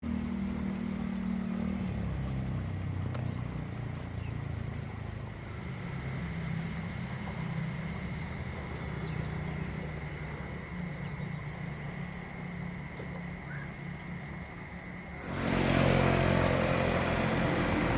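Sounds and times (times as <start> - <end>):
motor engine humming: 15.1 - 17.9.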